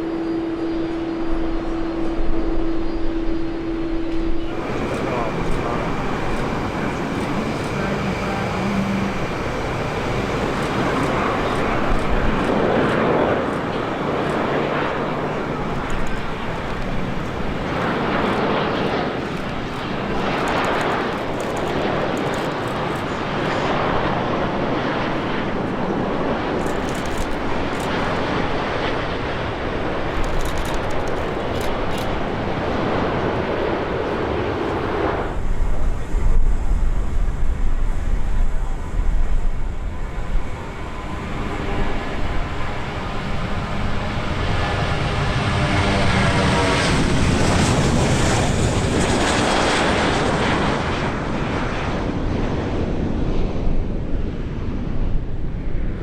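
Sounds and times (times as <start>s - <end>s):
jet engines rushing: 0.0s - 56.0s
low uneven rumble: 4.4s - 18.6s.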